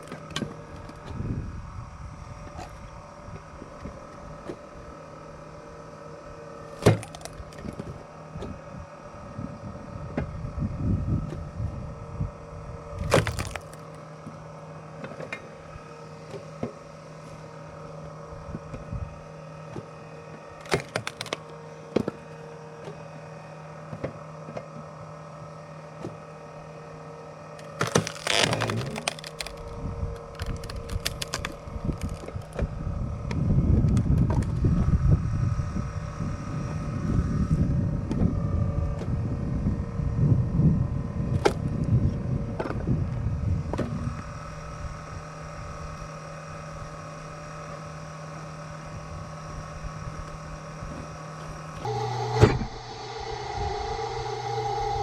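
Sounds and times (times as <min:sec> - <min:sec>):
axe splitting wood cracks: 0:06.8 - 0:07.8, 0:13.0 - 0:14.0, 0:20.6 - 0:21.5, 0:27.6 - 0:32.6
low hum: 0:27.6 - 0:46.1, 0:48.9 - 0:55.0.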